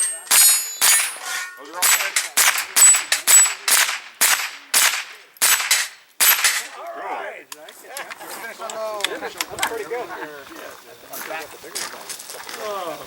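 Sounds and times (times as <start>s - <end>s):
steel targets ringing: 0.0s - 6.8s
rapid gunshots: 1.8s - 6.7s.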